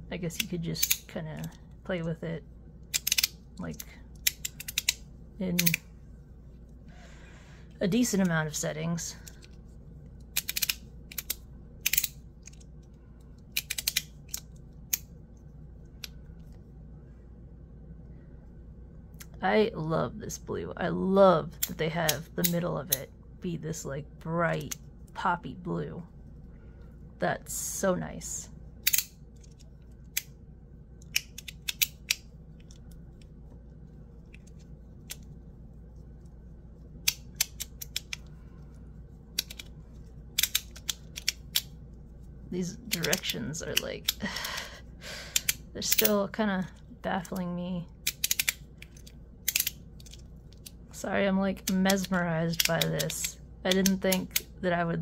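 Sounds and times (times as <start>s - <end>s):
metal fidget slider clicks: 2.9s - 5.0s, 10.4s - 12.6s, 13.5s - 15.1s, 28.8s - 30.3s, 37.1s - 38.2s, 40.4s - 41.7s, 48.0s - 50.2s
fidget slider clicking: 10.3s - 12.6s, 13.5s - 15.1s, 37.0s - 38.2s.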